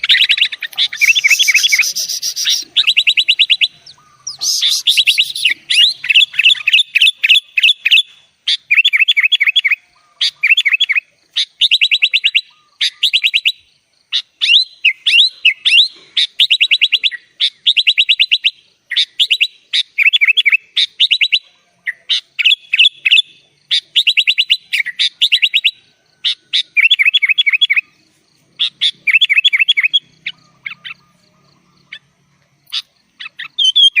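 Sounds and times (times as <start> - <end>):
bird singing rapid chirps: 0.0 - 34.0.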